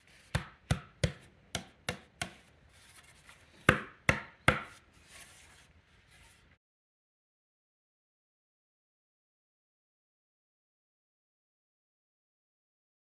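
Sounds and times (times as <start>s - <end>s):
sharp knocks on wood: 3.7s - 4.8s.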